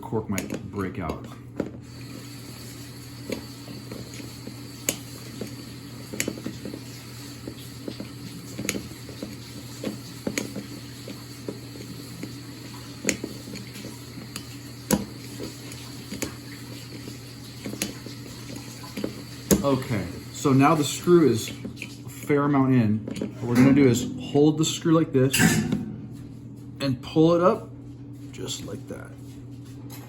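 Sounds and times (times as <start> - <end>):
steady low hum: 22.0 - 29.8.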